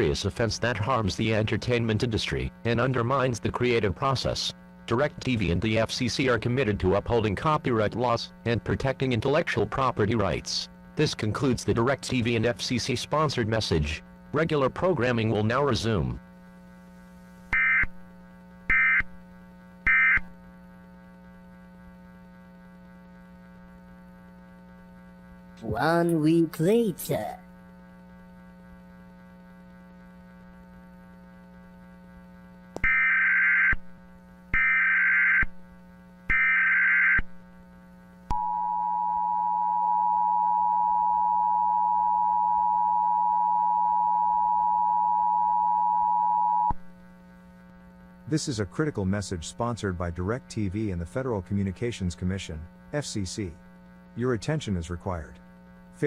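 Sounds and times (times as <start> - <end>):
steady low hum: 0.0 - 56.0
faint low hum: 33.8 - 56.0.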